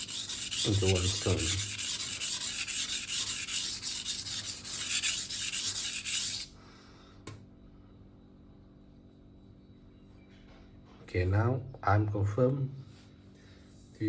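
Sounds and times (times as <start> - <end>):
knife scraping on whetstone: 0.0 - 6.5.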